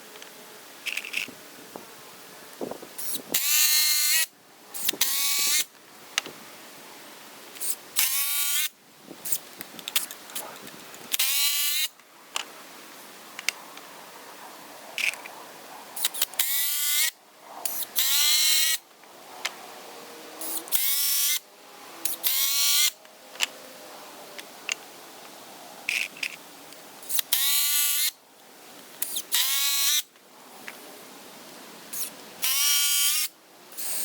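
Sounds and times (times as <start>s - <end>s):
power drill driving screws: 11.1s - 11.9s, 20.4s - 21.4s, 29.0s - 30.0s, 32.0s - 34.0s.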